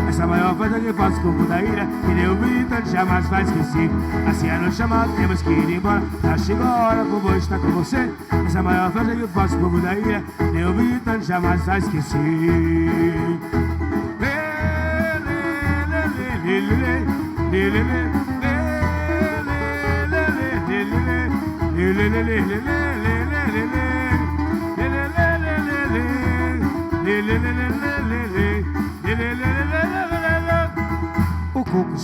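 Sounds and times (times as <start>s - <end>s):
band playing instrumental music: 0.0s - 32.0s.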